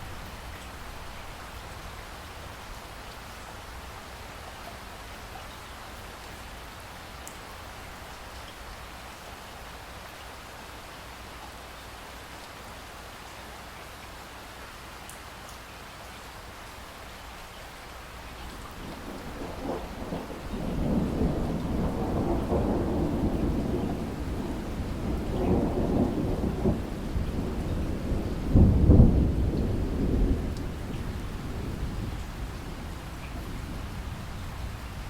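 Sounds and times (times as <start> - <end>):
steady rain: 0.0 - 35.0
rolling thunder: 18.7 - 35.0.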